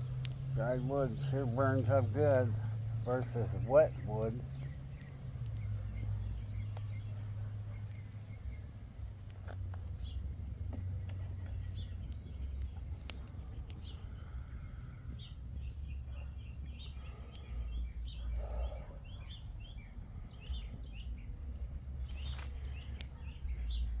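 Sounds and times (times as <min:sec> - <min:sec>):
small birds chirping: 0:00.0 - 0:24.0
steady low rumble: 0:00.0 - 0:24.0
sharp clicks: 0:00.2 - 0:00.6.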